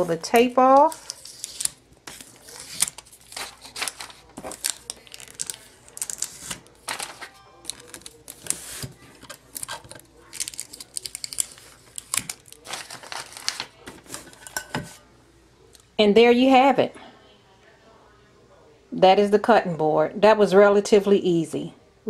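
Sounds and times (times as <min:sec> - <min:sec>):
tape peeling and crinkling: 0:00.8 - 0:14.4.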